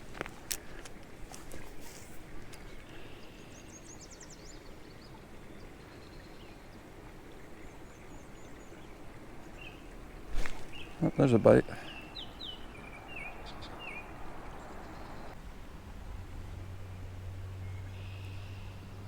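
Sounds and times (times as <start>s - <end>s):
low background hiss: 0.0s - 19.0s
faint bird chirps: 2.5s - 6.8s, 17.6s - 19.0s.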